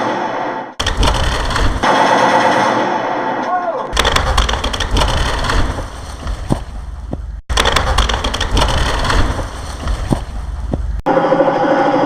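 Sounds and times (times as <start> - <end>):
gunfire: 0.0 - 6.9, 7.5 - 10.5
sharp impacts: 0.0 - 11.2
low rumble: 4.0 - 12.0.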